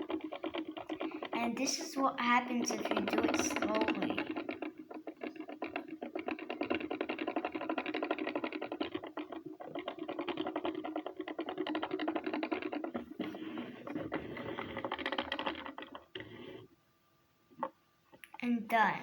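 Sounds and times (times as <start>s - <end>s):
plastic gears clicking: 2.6s - 16.3s.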